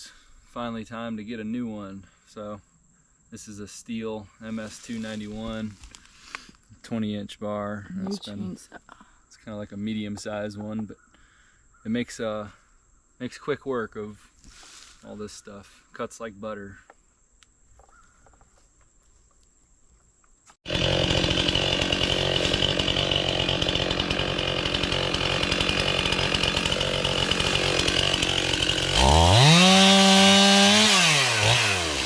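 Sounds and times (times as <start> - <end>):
chainsaw revving: 20.6 - 32.0.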